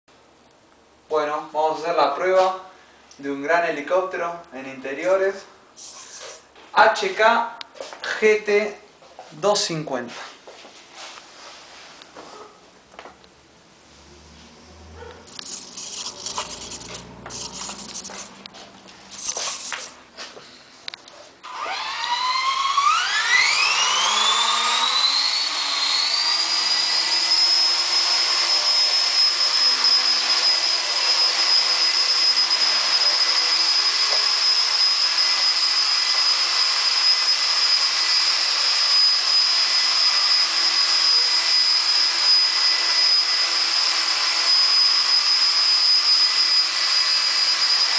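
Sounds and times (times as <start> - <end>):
rc helicopter motor whine: 15.3 - 19.9, 21.4 - 47.9.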